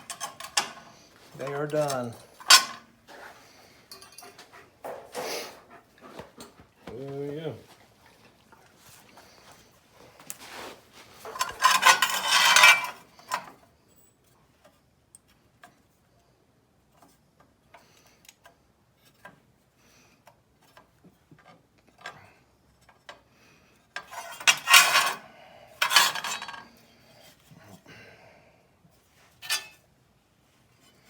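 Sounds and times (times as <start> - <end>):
sheet metal scraping and rattling: 0.0 - 2.9, 11.2 - 13.5
light metal clinks and taps: 3.9 - 5.1.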